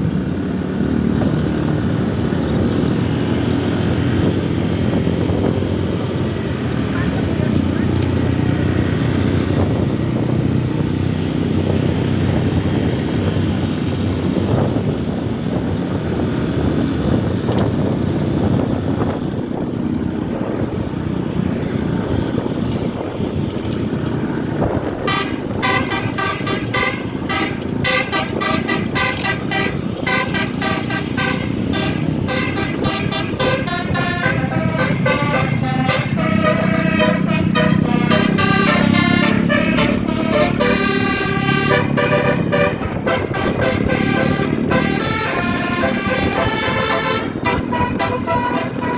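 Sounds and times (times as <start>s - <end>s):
bus engine rumble: 0.0s - 48.9s
passing traffic: 0.0s - 48.9s
multi-tone horn playing a tune: 24.8s - 48.9s.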